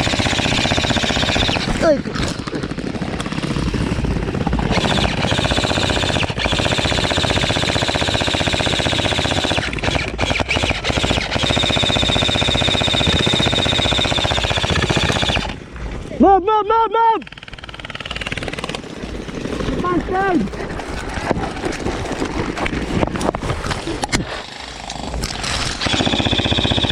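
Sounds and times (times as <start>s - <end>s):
airsoft rifles firing full-auto: 0.0s - 15.6s, 17.3s - 19.8s, 25.8s - 26.9s.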